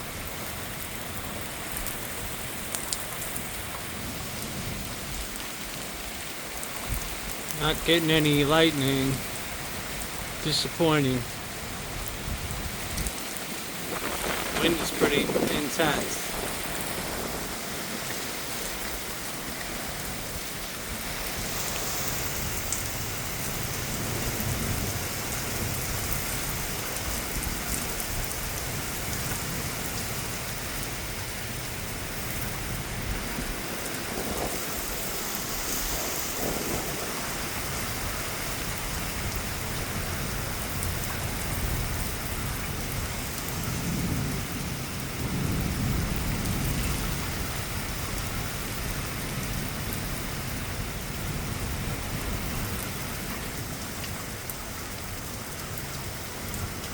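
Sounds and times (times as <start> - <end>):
heavy rain pouring: 0.0 - 56.9
wind gusting on microphone: 11.3 - 54.4
low thunder rumbling: 12.4 - 19.2, 36.4 - 52.8.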